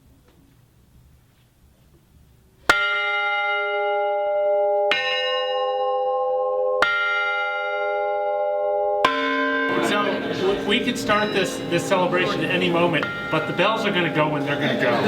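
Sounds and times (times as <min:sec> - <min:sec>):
faint room noise: 0:00.0 - 0:02.7
clock tower bell strokes: 0:02.7 - 0:14.6.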